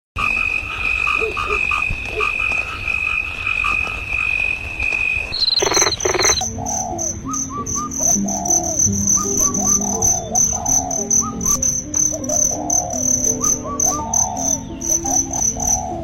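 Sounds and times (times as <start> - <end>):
frogs croaking: 0.2 - 16.0
insects trilling: 0.2 - 16.0
short chirping calls: 5.3 - 16.0.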